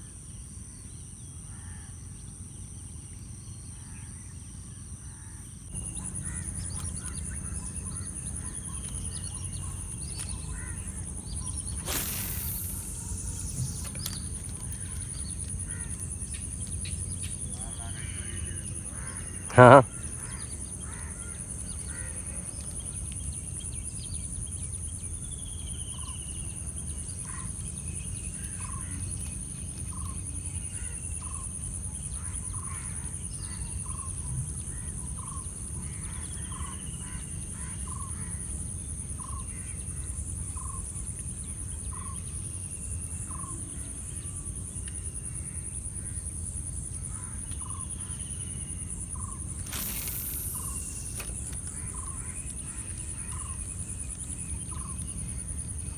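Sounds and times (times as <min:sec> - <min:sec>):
high-pitched whine: 0:11.2 - 0:15.5, 0:49.6 - 0:52.4
brief hiss: 0:11.5 - 0:15.4, 0:49.6 - 0:52.4
falling whistled notes: 0:11.7 - 0:14.6.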